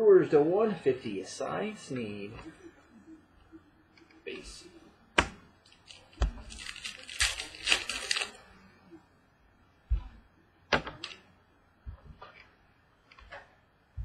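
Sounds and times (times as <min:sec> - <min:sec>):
packaging crinkling: 0:05.6 - 0:08.4.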